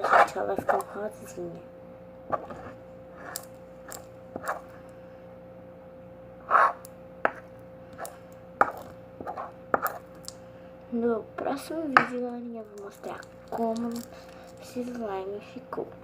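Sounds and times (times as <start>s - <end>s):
utensil scraping a bowl: 0.0s - 1.0s, 2.3s - 4.8s, 6.4s - 10.2s.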